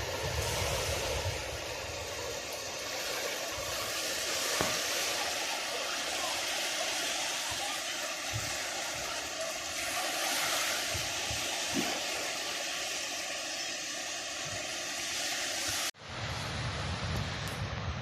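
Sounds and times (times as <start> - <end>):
wind buffeting microphone: 0.0 - 6.3, 16.0 - 18.0
steady rushing noise: 0.0 - 18.0.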